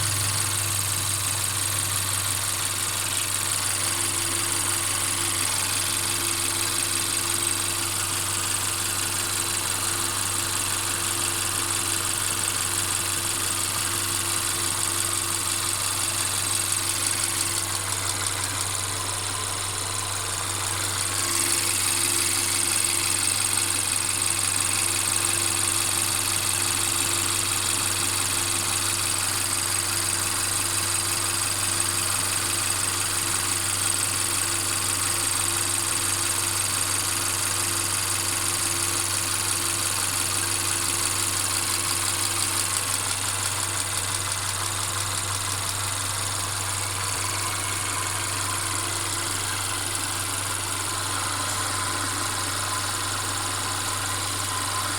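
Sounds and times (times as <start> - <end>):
car engine idling with rattle: 0.0 - 54.9.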